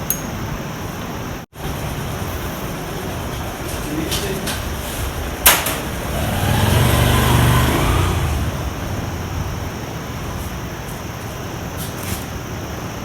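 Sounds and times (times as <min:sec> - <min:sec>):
sharp click: 0:00.0 - 0:00.4
motor vehicle passing by: 0:01.6 - 0:12.2.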